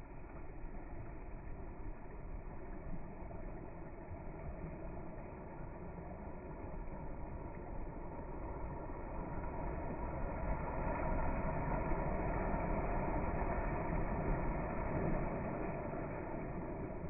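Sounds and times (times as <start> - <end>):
sea waves washing in: 0.0 - 17.0.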